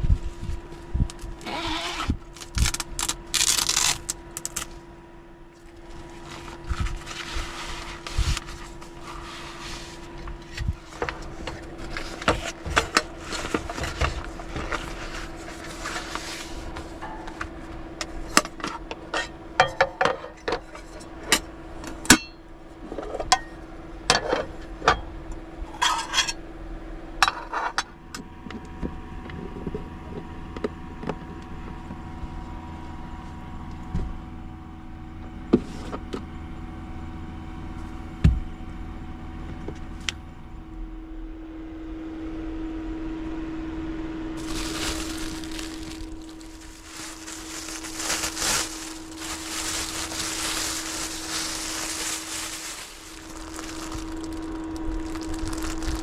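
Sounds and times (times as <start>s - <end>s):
low rumble: 0.0s - 1.4s, 44.3s - 56.0s
faint steady hum: 0.0s - 56.0s
small hard objects clattering: 44.4s - 56.0s.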